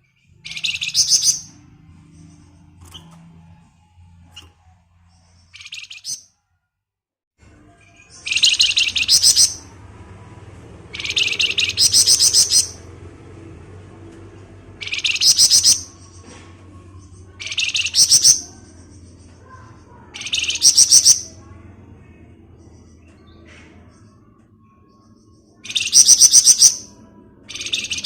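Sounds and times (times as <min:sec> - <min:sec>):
songbird chattering song: 0:00.3 - 0:01.6, 0:05.2 - 0:06.2, 0:07.8 - 0:09.7, 0:10.9 - 0:12.8, 0:14.8 - 0:16.2, 0:16.9 - 0:21.5, 0:22.1 - 0:28.0.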